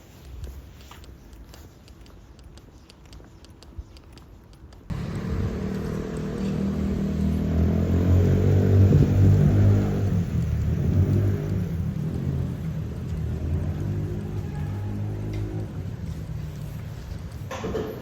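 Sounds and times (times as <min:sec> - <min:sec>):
low engine running: 0:04.9 - 0:17.5.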